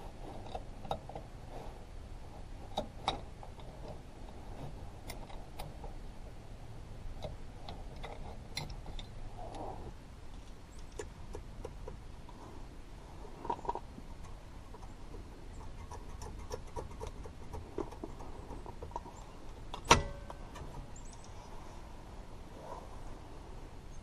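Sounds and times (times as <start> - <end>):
sharp metallic clank: 19.8 - 20.6.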